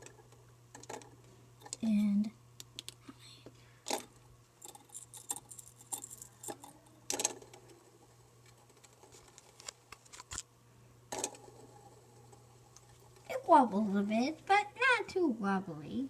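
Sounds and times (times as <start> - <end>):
ceiling fan humming: 0.0 - 16.0
irregular clicks and taps: 2.6 - 5.4.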